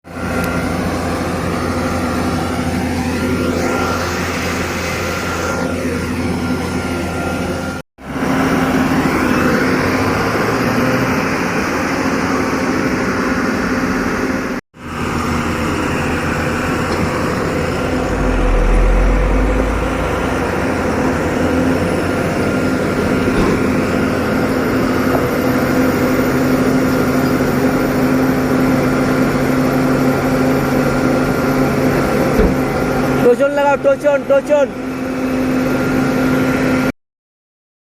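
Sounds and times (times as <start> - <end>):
heavy truck engines under load: 0.1 - 34.0.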